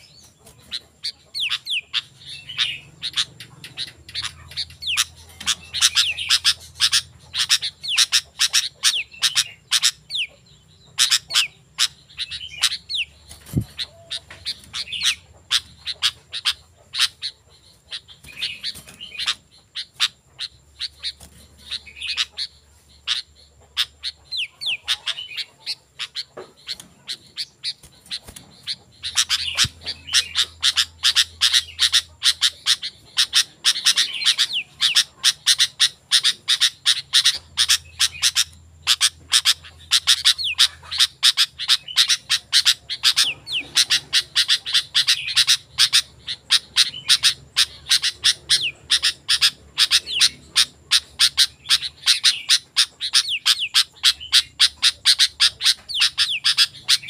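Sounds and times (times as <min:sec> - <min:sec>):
bulbul singing: 0:00.0 - 0:57.0.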